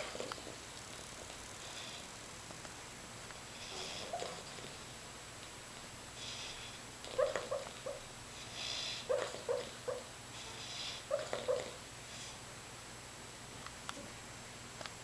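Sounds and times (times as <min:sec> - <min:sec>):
dog woofing softly in sleep: 0:03.6 - 0:04.8, 0:06.2 - 0:12.4
dog hissing breath in: 0:06.1 - 0:06.9, 0:08.4 - 0:09.1, 0:10.3 - 0:11.2.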